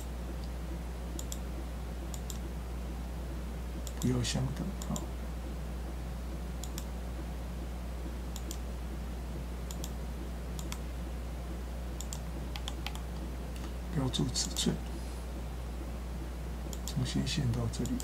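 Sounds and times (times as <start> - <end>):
steady low hum: 0.0 - 18.0
computer mouse clicking: 0.4 - 1.5, 2.1 - 2.5, 3.8 - 4.2, 4.8 - 5.1, 6.6 - 6.9, 8.3 - 8.6, 9.7 - 10.0, 10.6 - 10.8, 12.0 - 13.8, 16.7 - 17.0, 17.8 - 18.0.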